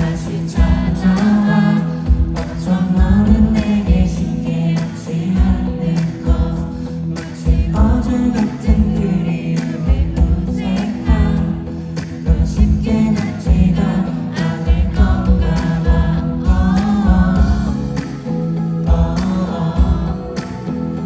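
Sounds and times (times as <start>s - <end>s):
steady low drum beat: 0.0s - 1.4s, 2.1s - 4.4s, 5.4s - 6.8s, 7.5s - 9.2s, 9.9s - 18.0s, 18.9s - 20.4s
person singing pop ballad: 0.0s - 21.0s.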